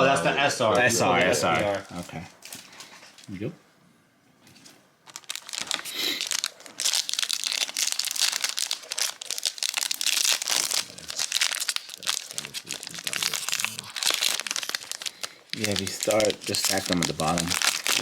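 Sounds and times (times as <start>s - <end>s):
foil wrapper tearing and crinkling: 5.0s - 18.0s.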